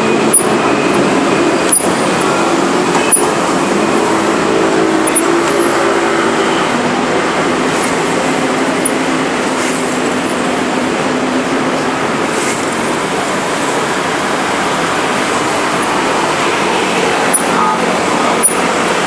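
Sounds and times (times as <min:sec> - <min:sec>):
wheel running with abnormal noise: 0:00.0 - 0:19.0.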